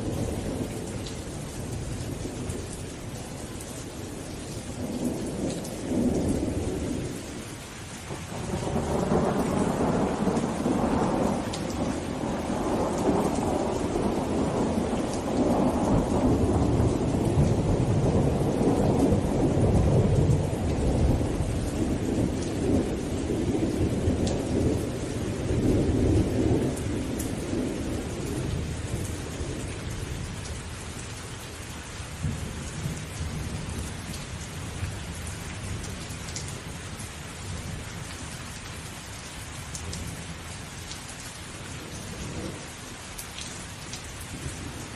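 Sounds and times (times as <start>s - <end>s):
steady rain: 0.0s - 44.9s
rolling thunder: 8.2s - 30.7s.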